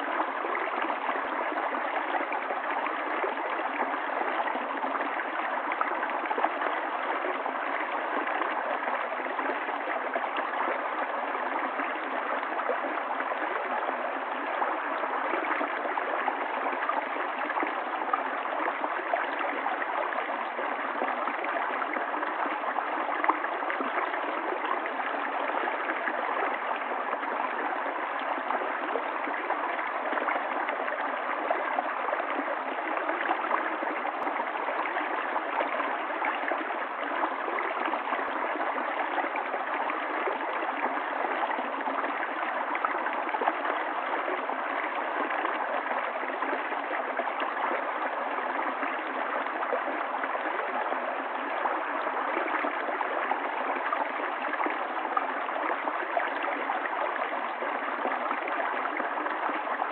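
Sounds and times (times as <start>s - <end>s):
stream of running water: 0.0s - 59.9s.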